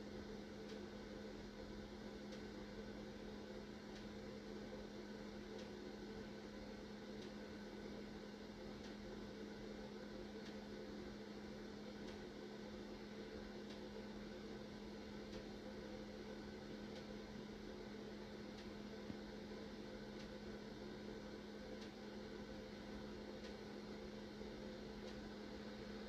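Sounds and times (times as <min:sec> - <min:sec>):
constant hiss: 0:00.0 - 0:26.0
faint electrical hum: 0:00.0 - 0:26.0
faint ticks: 0:05.6 - 0:05.8.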